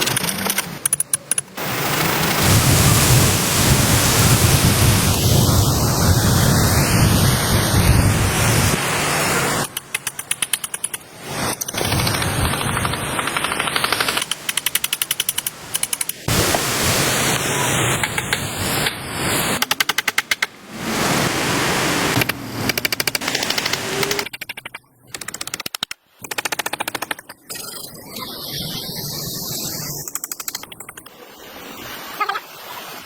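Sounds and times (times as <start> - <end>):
steady hiss: 1.6 - 9.7.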